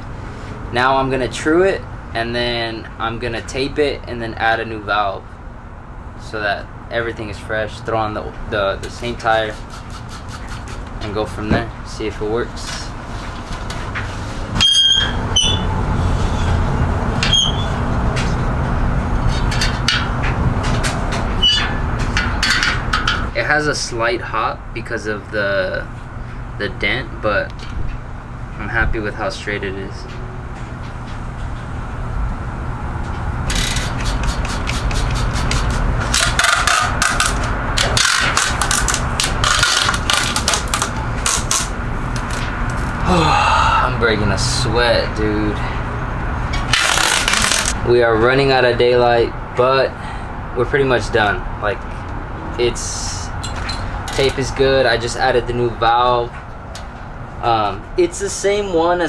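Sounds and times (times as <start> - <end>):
hands scraping bicycle wheel: 8.9 - 11.1, 12.6 - 17.8, 33.5 - 43.0, 46.6 - 47.8
metallic pings from bicycle spokes: 14.6 - 15.7.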